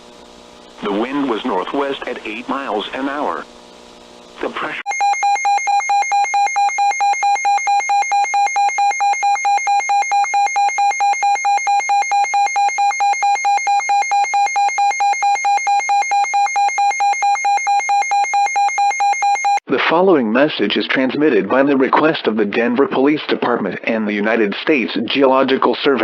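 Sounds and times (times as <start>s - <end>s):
rapid buzzy alert beeps: 4.9s - 19.6s.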